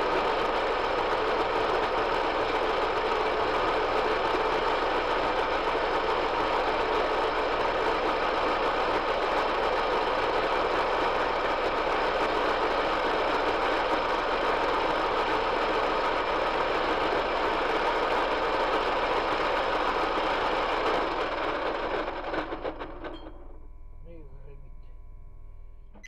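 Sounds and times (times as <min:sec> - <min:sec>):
lathe whirring: 0:00.0 - 0:23.5.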